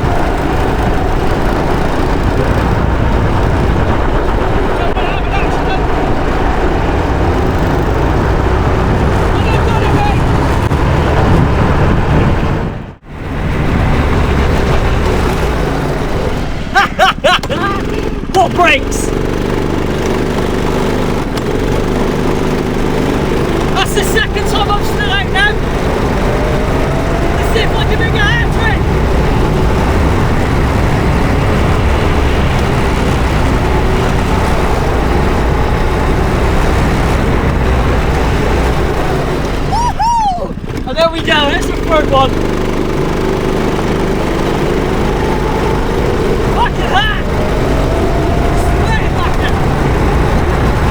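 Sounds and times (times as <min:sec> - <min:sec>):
go-kart engine running: 0:00.0 - 0:50.9
short high squeals: 0:39.7 - 0:40.6.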